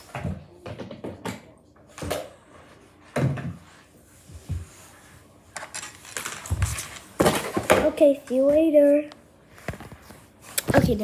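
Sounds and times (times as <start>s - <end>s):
objects knocking and clattering: 0.1s - 2.3s, 6.2s - 8.0s.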